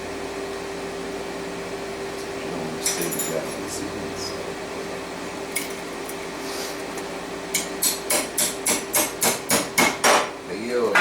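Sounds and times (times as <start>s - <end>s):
rapid hammer taps on metal: 7.6s - 10.3s.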